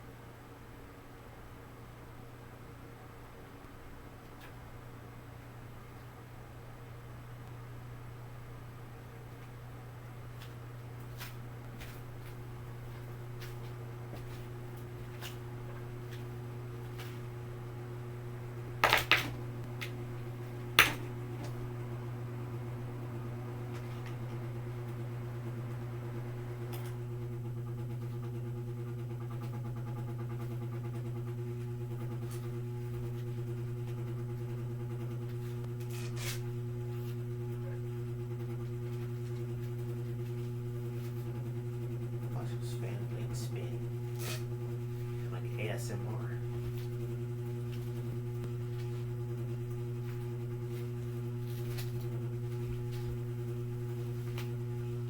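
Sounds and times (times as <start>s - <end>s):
ceiling fan motor hum: 0.0s - 55.0s
ceiling fan clicks: 3.5s - 6.3s, 7.2s - 7.8s, 9.2s - 35.9s, 38.2s - 55.0s.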